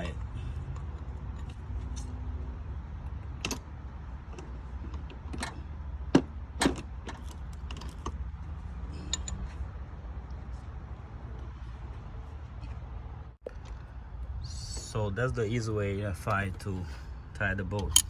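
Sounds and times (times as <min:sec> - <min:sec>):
steady low hum: 0:00.0 - 0:18.0
tools clinking on metal: 0:17.8 - 0:18.0.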